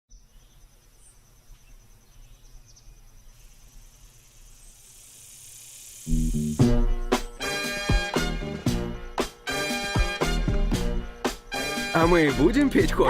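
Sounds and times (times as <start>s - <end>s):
insects trilling: 0.1s - 7.8s
hiss: 3.4s - 7.8s
upbeat music with bass line: 6.1s - 13.0s.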